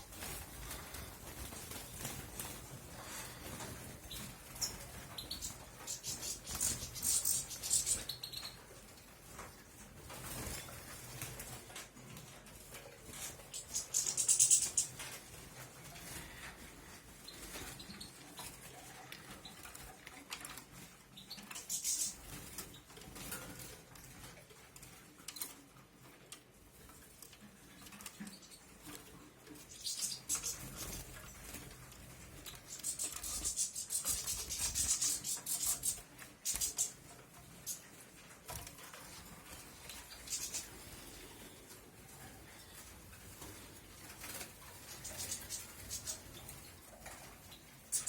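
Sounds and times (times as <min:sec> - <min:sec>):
bird twittering: 0:13.5 - 0:14.9.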